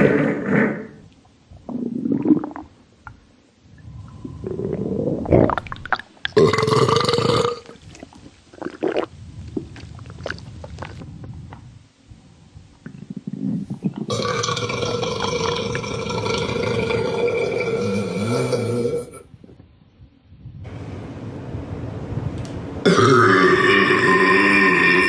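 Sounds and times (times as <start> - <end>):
stomach gurgling and rumbling: 0.0 - 20.7
person burping: 6.4 - 7.8, 14.1 - 19.2, 22.9 - 25.0.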